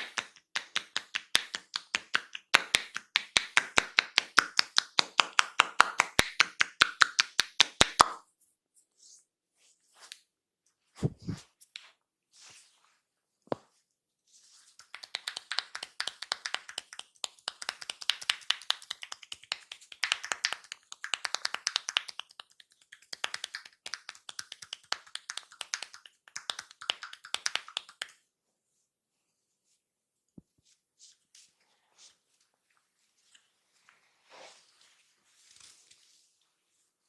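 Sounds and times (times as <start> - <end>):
hands patting a head: 0.0 - 8.3, 14.5 - 28.3.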